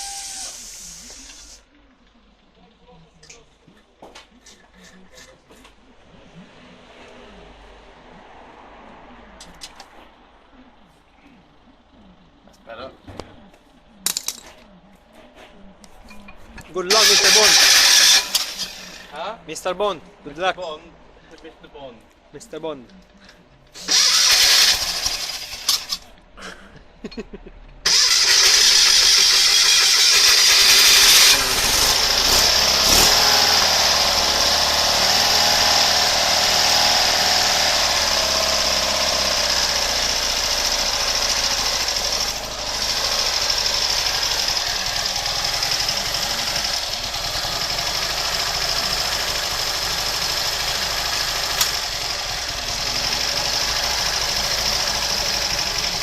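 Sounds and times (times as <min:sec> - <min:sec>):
engine revving and running: 0:16.9 - 0:19.1, 0:23.8 - 0:26.0, 0:27.9 - 0:56.0
engine cranking: 0:16.9 - 0:19.2, 0:23.8 - 0:26.1, 0:27.9 - 0:56.0.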